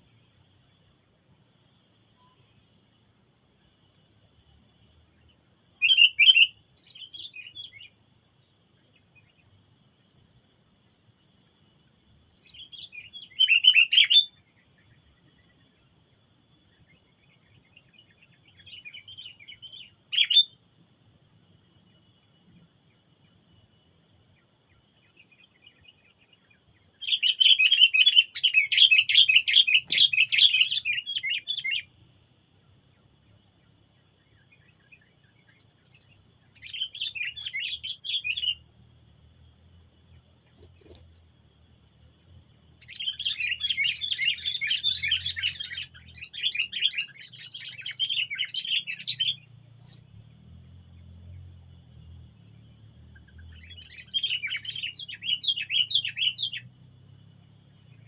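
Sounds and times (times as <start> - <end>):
songbird chattering: 5.8 - 7.9, 26.9 - 32.0, 34.3 - 38.7, 42.8 - 50.0, 53.2 - 56.8.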